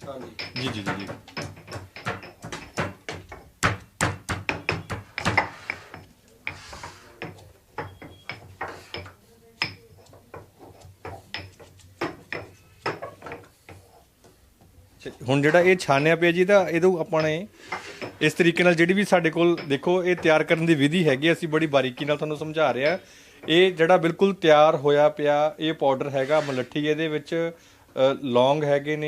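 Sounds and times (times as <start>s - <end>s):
sieve knocked and tapped: 0.0s - 13.5s.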